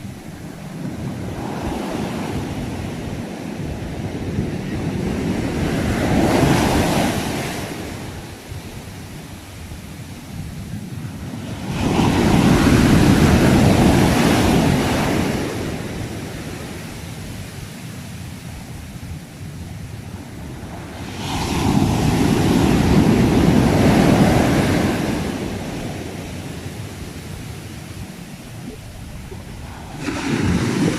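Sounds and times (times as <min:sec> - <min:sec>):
sea waves breaking: 0:20.1 - 0:30.9.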